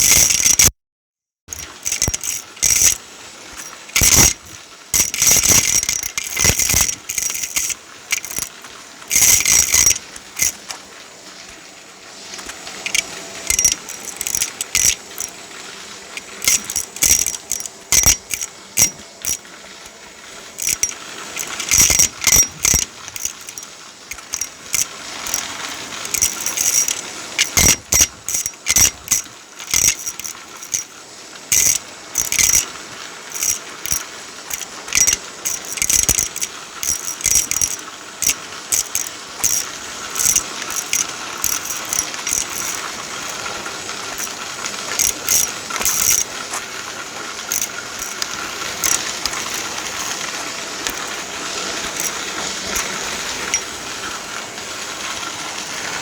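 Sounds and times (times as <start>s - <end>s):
small hard objects clicking: 0.0s - 0.7s, 1.5s - 10.8s, 12.3s - 15.4s, 16.2s - 19.4s, 20.5s - 30.9s, 31.5s - 53.7s
steady whir: 1.5s - 10.8s, 12.3s - 15.4s, 16.2s - 19.4s, 20.6s - 30.9s, 31.5s - 46.6s.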